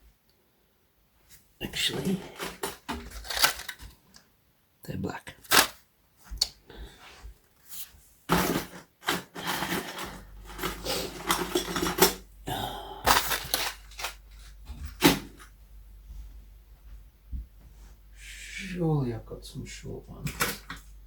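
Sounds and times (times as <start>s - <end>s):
small metal parts clinking: 2.4s - 3.9s, 8.4s - 12.2s, 13.1s - 14.5s
low steady hum: 9.5s - 21.0s.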